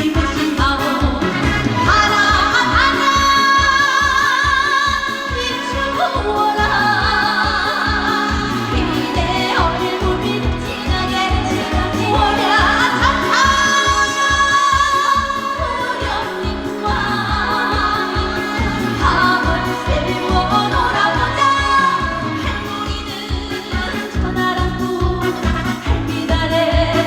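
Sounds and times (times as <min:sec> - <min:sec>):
amplified backing track with beat: 0:00.0 - 0:27.0
woman singing: 0:00.0 - 0:27.0.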